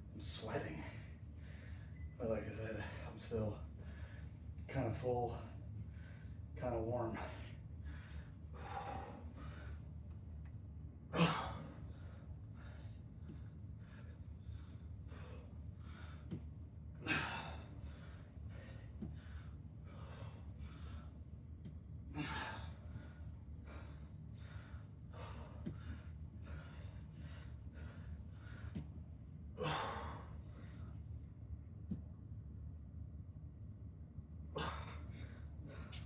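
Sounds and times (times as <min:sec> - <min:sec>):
man breathing hard: 0:00.8 - 0:02.0, 0:03.7 - 0:04.5, 0:05.3 - 0:06.5, 0:07.2 - 0:10.0, 0:11.2 - 0:21.3, 0:22.1 - 0:29.0, 0:29.6 - 0:31.1, 0:34.6 - 0:36.0.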